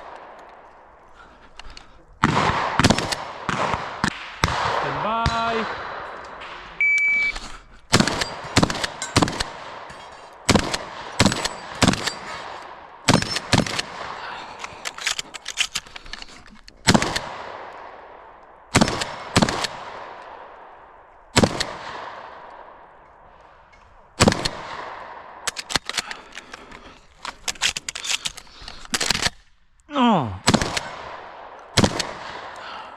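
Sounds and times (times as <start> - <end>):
shotgun shots echoing: 2.2 - 6.9, 7.9 - 14.3, 16.8 - 22.8, 24.2 - 25.5, 30.4 - 32.6
shot timer beep: 6.8 - 7.4.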